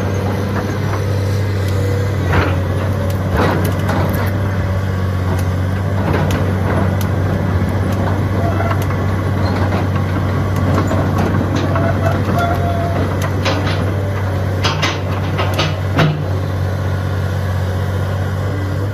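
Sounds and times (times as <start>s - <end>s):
excavator diesel engine running: 0.0s - 18.9s
machine knocks and clanks: 2.2s - 4.4s, 5.2s - 16.5s.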